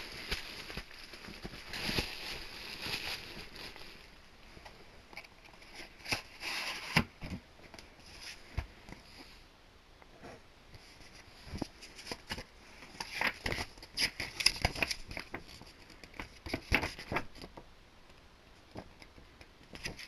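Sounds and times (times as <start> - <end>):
packaging crinkling: 0.0 - 4.2.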